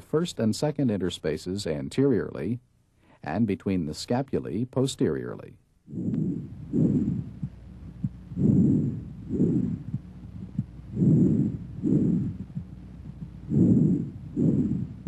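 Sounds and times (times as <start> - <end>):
faint heartbeats: 5.8 - 15.0
breath sounds through stethoscope: 5.9 - 15.0.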